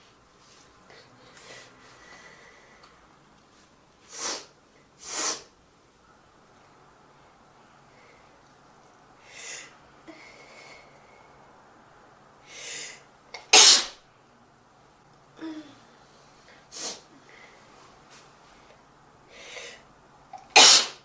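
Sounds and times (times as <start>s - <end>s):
person sneezing: 4.1s - 5.5s, 12.6s - 14.0s, 16.7s - 17.1s, 20.4s - 21.0s.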